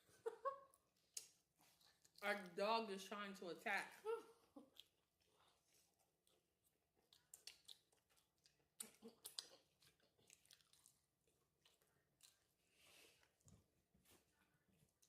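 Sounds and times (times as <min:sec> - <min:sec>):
chewing crunchy chips: 0:01.0 - 0:02.3, 0:04.6 - 0:15.0.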